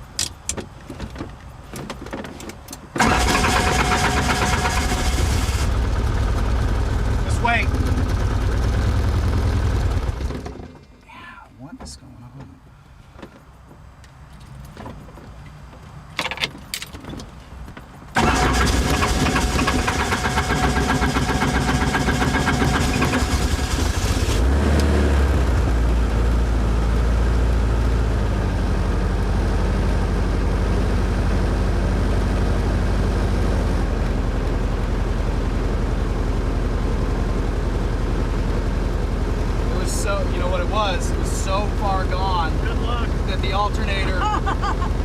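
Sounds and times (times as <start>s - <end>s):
helicopter engine starting and running: 3.0s - 10.7s, 18.2s - 24.4s, 42.4s - 45.0s.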